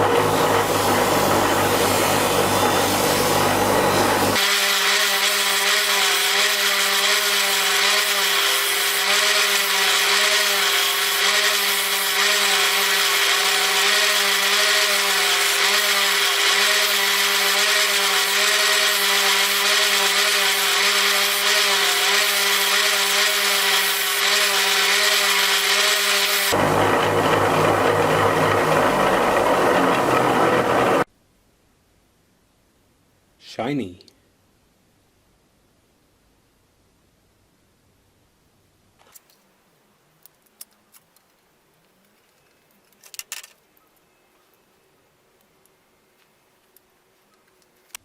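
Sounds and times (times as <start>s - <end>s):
handheld power tool running: 0.0s - 31.1s.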